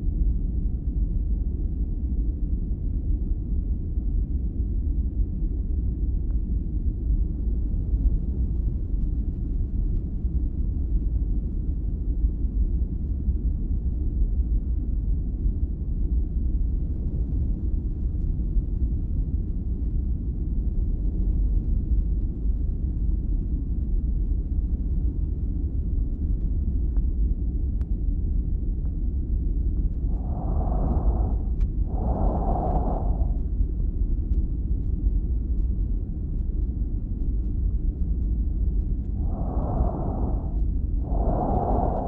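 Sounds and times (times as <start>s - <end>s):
breath noise through stethoscope: 30.1s - 33.4s.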